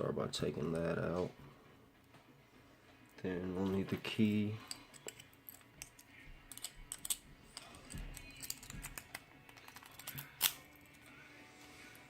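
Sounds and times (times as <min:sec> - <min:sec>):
padlock and key clicking: 0:04.9 - 0:07.2, 0:07.9 - 0:10.9.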